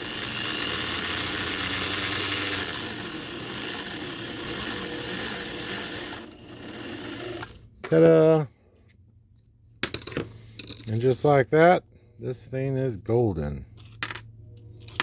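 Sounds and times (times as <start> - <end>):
ribbon spooler whirring: 0.0 - 7.6.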